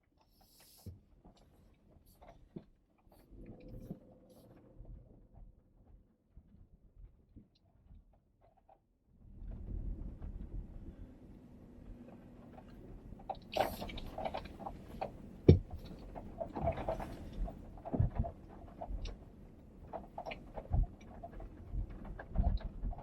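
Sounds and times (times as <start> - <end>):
car knocking and rattling: 12.5 - 23.0.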